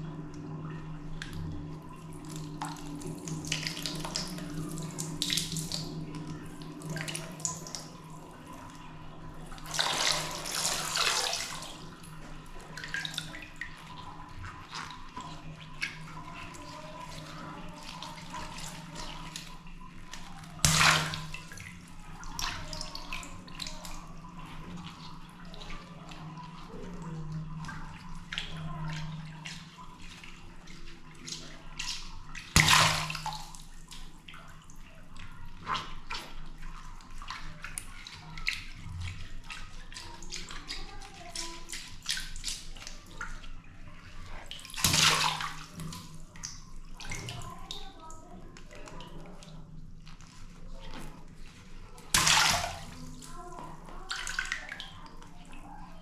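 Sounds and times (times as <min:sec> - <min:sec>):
water dripping and splashing: 0:00.0 - 0:56.0
water balloons popping and splashing: 0:17.7 - 0:22.6, 0:31.9 - 0:34.2, 0:44.6 - 0:47.6, 0:52.0 - 0:54.6.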